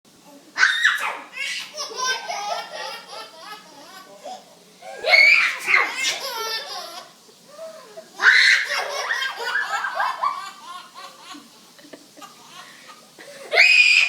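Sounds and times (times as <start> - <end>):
baby laughing: 1.4 - 4.3, 5.6 - 7.2, 8.3 - 12.9.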